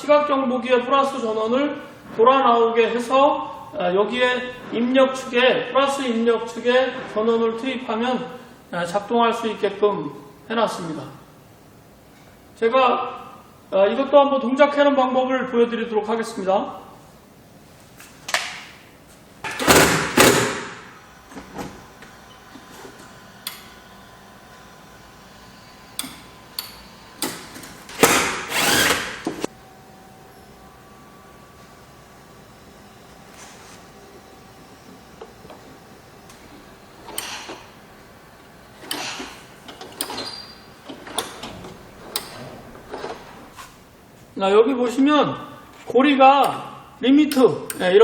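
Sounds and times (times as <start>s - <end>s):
loud scraping sliding sounds: 28.0s - 29.5s.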